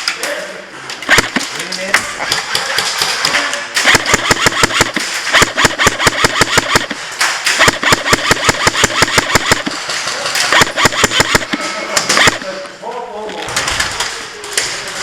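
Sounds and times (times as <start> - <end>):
airsoft guns firing bursts: 1.1 - 1.5, 2.2 - 12.6.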